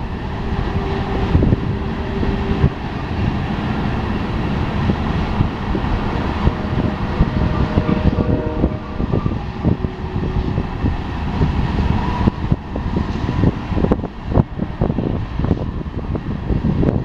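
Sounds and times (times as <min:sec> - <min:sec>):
train rumbling past: 0:00.0 - 0:17.0
wheels clacking on rails: 0:00.0 - 0:17.0.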